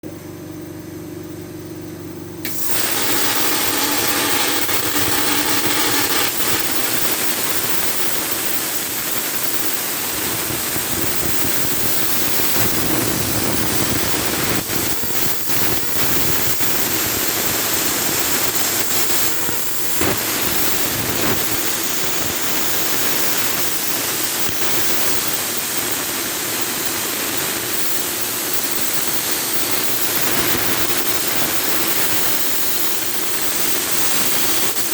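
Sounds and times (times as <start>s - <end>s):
machine hum with tones: 0.0s - 25.9s
plasma torch cutting hiss: 2.4s - 34.9s.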